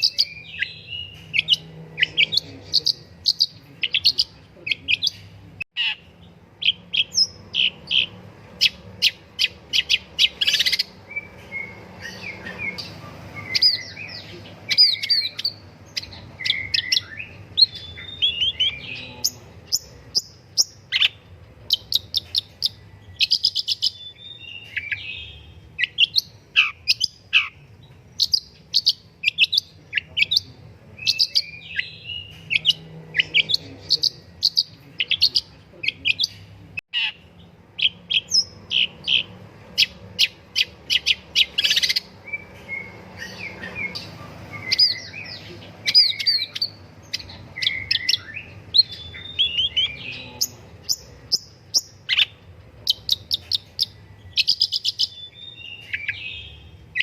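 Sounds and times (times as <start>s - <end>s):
shrike singing chirps and whistles: 5.8s - 27.6s, 37.8s - 57.0s.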